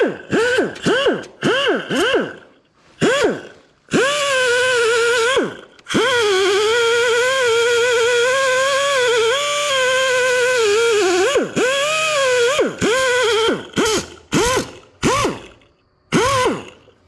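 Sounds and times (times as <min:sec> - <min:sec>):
grinder spinning up and down: 0:00.0 - 0:17.0
electric grinder whining on metal: 0:03.0 - 0:16.9.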